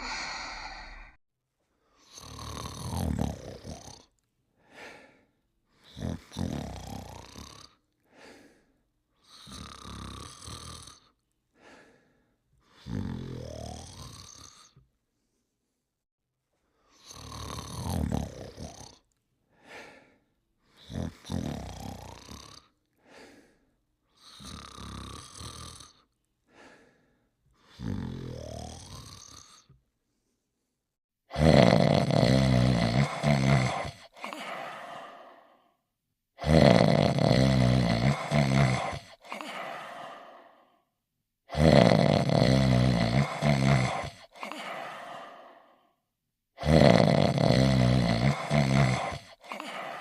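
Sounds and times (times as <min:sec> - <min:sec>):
cartoon rasping snores: 0:00.0 - 0:01.2, 0:02.0 - 0:04.1, 0:05.8 - 0:07.8, 0:09.2 - 0:11.1, 0:12.7 - 0:14.8, 0:16.9 - 0:19.0, 0:20.7 - 0:22.8, 0:24.1 - 0:26.1, 0:27.6 - 0:29.8, 0:31.3 - 0:35.8, 0:36.4 - 0:40.8, 0:41.5 - 0:46.0, 0:46.6 - 0:50.0
soft hissing breaths: 0:00.0 - 0:01.2.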